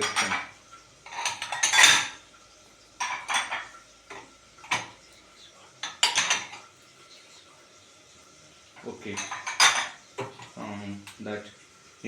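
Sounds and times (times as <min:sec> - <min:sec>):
utensils and dishes clattering: 0:00.0 - 0:02.2, 0:03.0 - 0:05.0, 0:05.8 - 0:06.8, 0:08.8 - 0:11.3.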